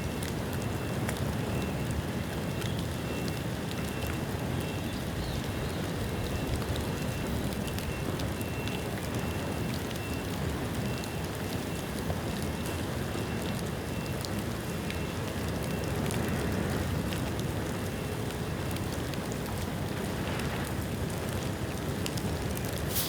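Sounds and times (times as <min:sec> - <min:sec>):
fire crackling: 0:00.1 - 0:23.0
rush of flame: 0:22.8 - 0:23.0.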